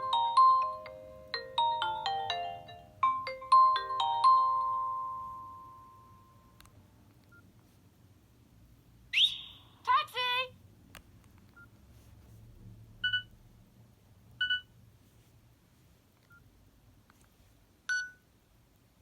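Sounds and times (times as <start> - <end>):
phone ringtone marimba melody: 0.0 - 6.5.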